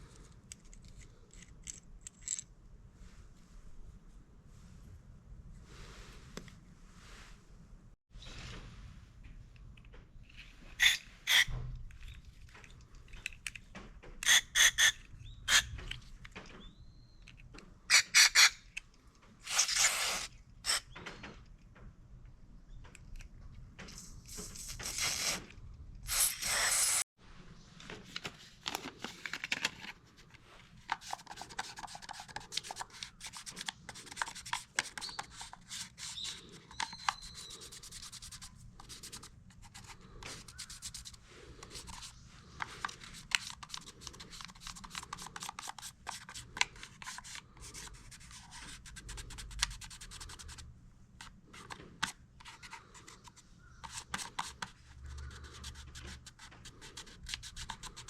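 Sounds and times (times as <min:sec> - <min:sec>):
rustling handling noise: 0:26.5 - 0:49.2.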